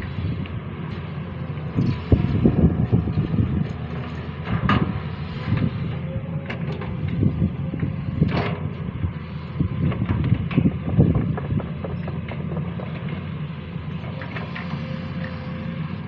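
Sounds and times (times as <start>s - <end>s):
excavator diesel engine under load: 0.0s - 16.0s.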